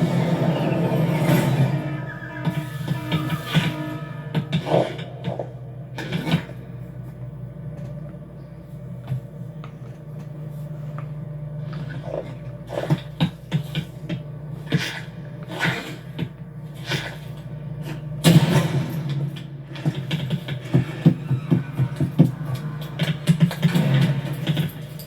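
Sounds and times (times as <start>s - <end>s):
scrapes: 0.0s - 7.2s
low hum of room tone: 0.0s - 25.0s.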